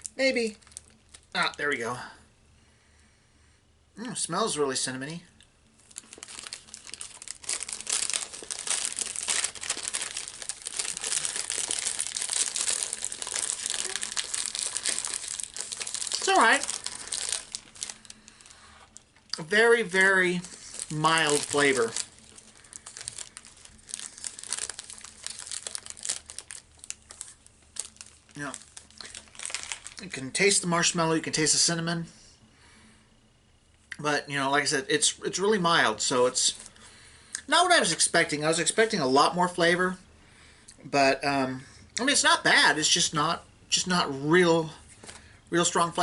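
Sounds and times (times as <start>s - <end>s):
plastic wrapper crinkling: 0.0s - 1.6s, 5.7s - 31.0s.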